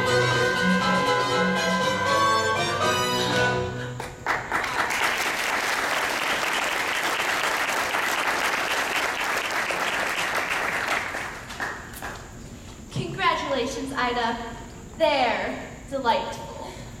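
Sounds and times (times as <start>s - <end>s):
backing music: 0.0s - 4.2s
audience applauding: 4.0s - 12.3s.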